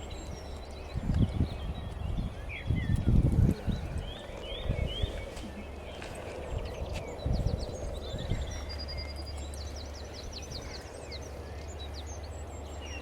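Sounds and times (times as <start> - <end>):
songbirds chirping and trilling: 0.0 - 13.0
steady low rumble: 0.0 - 13.0.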